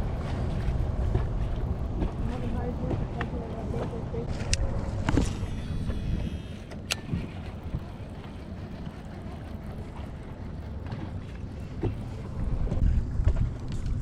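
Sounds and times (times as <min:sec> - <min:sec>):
wind rumbling on microphone: 0:00.0 - 0:14.0.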